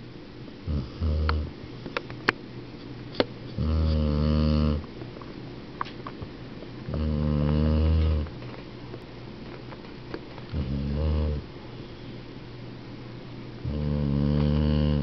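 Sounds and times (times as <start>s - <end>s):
dog snoring: 0.6s - 1.5s, 3.6s - 4.9s, 6.9s - 8.3s, 10.5s - 11.5s, 13.6s - 15.0s.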